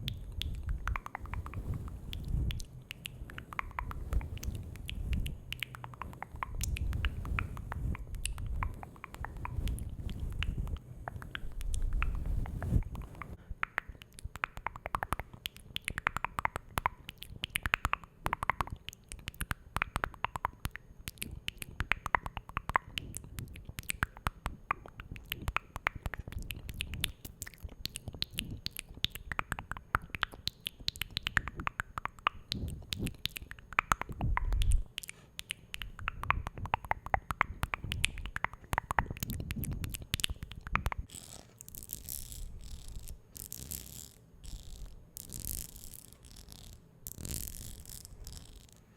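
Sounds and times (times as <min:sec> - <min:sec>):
wet mouth clicks and pops: 0:00.0 - 0:43.7
soft hiss: 0:00.0 - 0:48.9.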